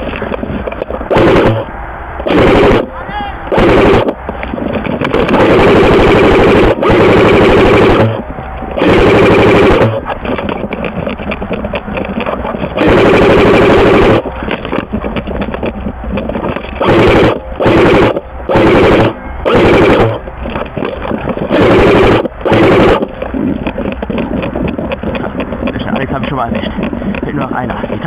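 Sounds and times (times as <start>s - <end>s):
airsoft gun full-auto bursts: 1.1s - 10.5s, 12.7s - 14.8s, 16.8s - 23.4s.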